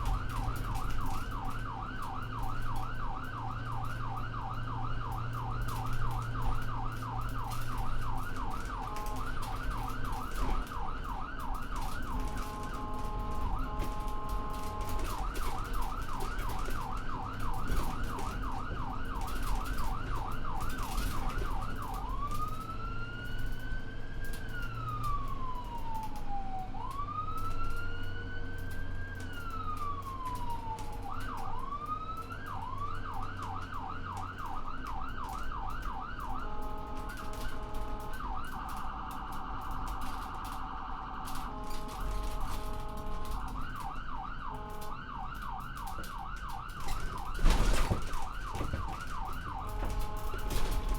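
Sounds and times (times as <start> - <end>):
ambulance siren: 0.0 - 50.9
low vehicle rumble: 29.2 - 50.9.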